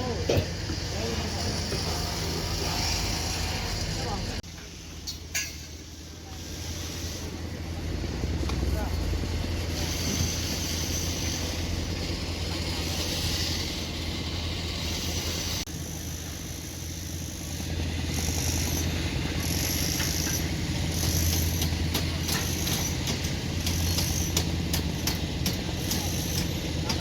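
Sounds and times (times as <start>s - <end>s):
light metal clanks: 5.0s - 5.8s
diesel engine hum: 6.0s - 27.0s.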